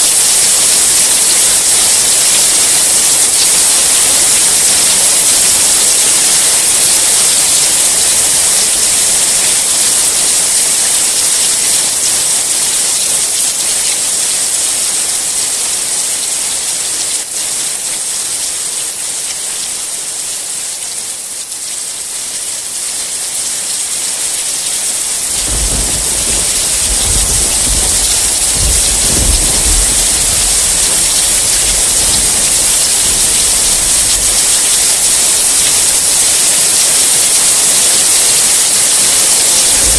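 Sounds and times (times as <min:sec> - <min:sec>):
heavy rain: 0:00.0 - 0:39.9
low rumble of thunder: 0:04.2 - 0:12.2, 0:25.0 - 0:39.9.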